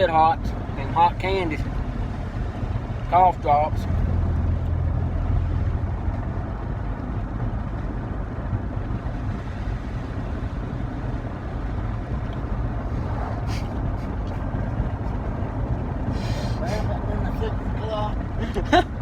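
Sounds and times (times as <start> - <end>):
motor vehicle engine rumble: 0.0 - 19.0.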